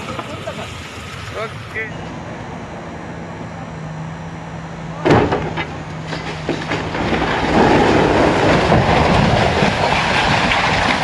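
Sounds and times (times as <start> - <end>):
loud crack: 5.0 - 11.0
structure crashing down: 5.0 - 11.0
cracks and knocks: 5.1 - 11.0.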